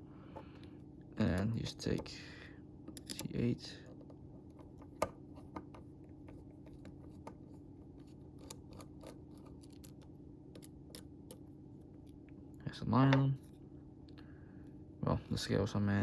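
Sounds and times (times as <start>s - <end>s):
steady low hum: 0.0s - 16.0s
small metal parts clicking: 2.9s - 3.3s, 8.4s - 11.1s.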